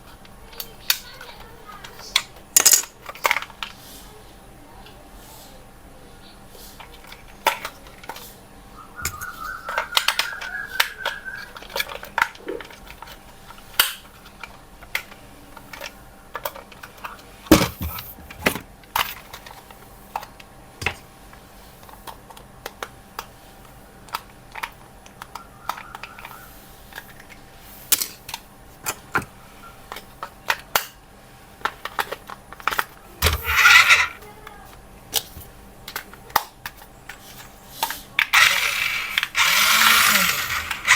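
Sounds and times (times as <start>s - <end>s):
plastic toy parts clattering: 0.6s - 3.8s, 9.1s - 21.0s, 31.6s - 34.3s, 35.9s - 40.9s.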